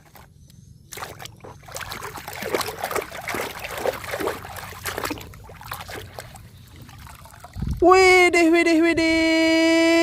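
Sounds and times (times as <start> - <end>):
water sloshing and splashing: 0.0 - 7.9.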